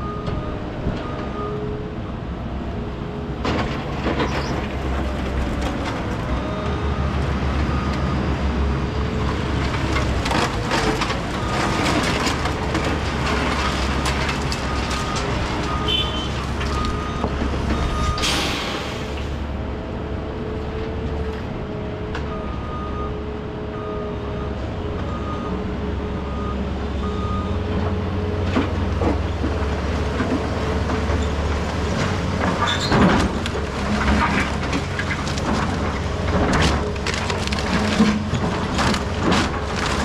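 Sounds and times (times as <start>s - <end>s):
diesel machinery running: 0.0s - 40.0s
reversing alarm beeping: 14.7s - 19.3s.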